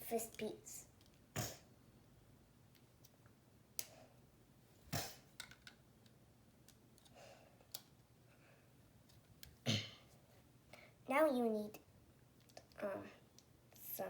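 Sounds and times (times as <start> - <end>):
plastic bricks clicking: 5.4 - 6.2.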